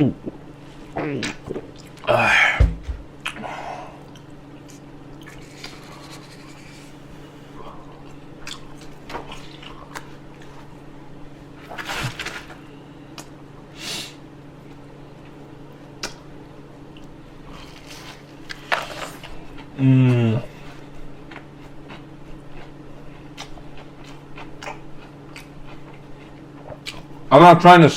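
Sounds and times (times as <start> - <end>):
steady low hum: 0.0 - 27.9
chewing with wet mouth smacks: 4.1 - 6.8, 8.0 - 10.6, 20.6 - 27.2.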